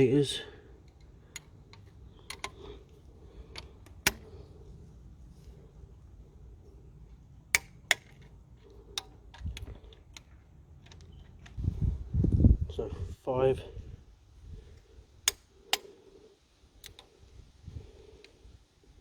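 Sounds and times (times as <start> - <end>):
torque wrench metallic clicks: 0.8 - 4.4, 7.5 - 11.6, 15.2 - 15.9.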